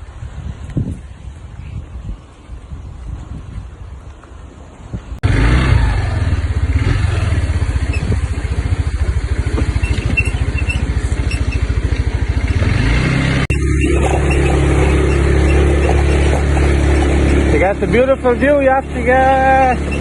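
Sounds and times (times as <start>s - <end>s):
faint wind: 0.0s - 20.0s
small motorcycle engine running: 5.2s - 20.0s.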